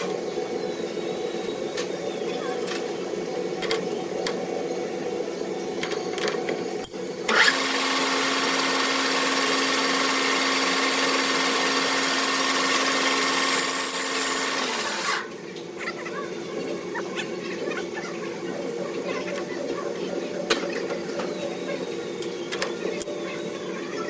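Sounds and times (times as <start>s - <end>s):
machine humming: 2.9s - 24.0s
power tool hissing: 7.3s - 15.3s.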